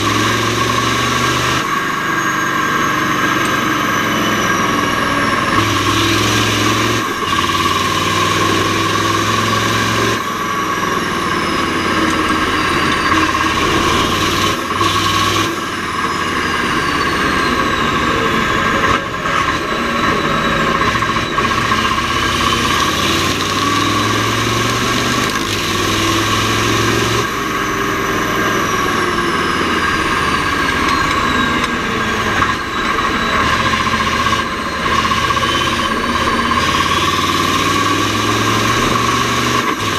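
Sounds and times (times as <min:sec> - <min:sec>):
diesel truck engine revving: 0:00.0 - 0:39.9
high whine: 0:00.0 - 0:39.9.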